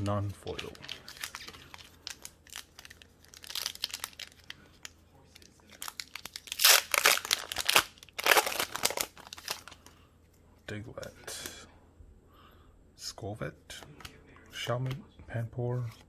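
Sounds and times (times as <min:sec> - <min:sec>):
foil wrapper crinkling and tearing: 0:00.0 - 0:04.8, 0:05.4 - 0:09.8.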